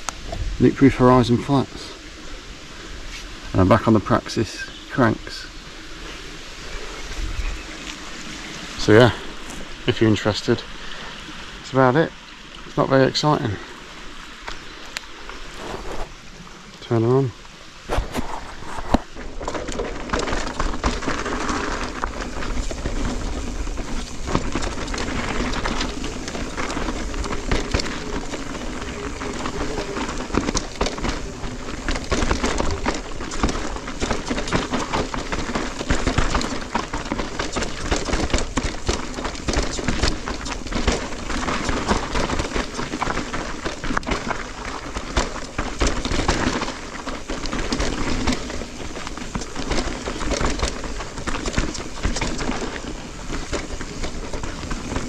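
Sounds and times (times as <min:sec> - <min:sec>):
tyre noise on dirt trail: 0:00.0 - 0:55.0
bike knocks and rattles: 0:17.9 - 0:55.0.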